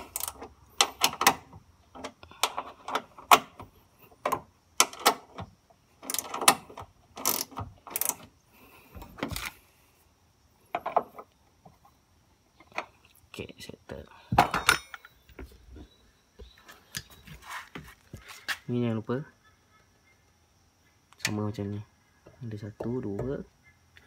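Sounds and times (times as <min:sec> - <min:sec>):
ratchet wrench clicking: 0:00.0 - 0:01.4, 0:06.0 - 0:08.3.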